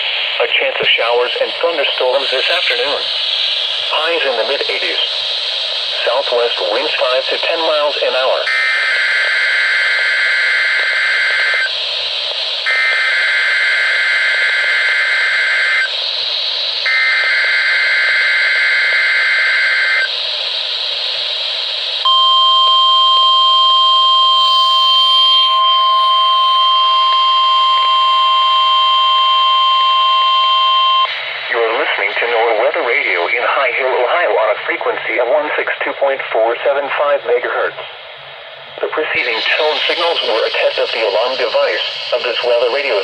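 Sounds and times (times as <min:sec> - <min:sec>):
radio static: 0:00.0 - 0:16.0, 0:22.0 - 0:38.0, 0:38.8 - 0:43.0
steady alarm tone: 0:01.6 - 0:31.4, 0:39.2 - 0:43.0.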